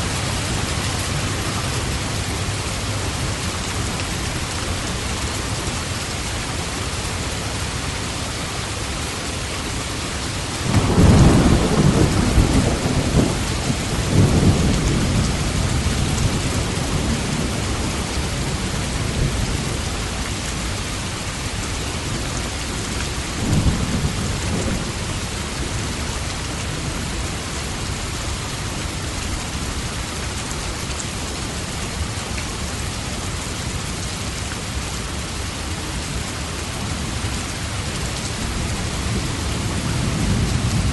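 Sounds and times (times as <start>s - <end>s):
heavy rain falling: 0.0s - 40.9s
thunder rumbling: 10.6s - 19.4s.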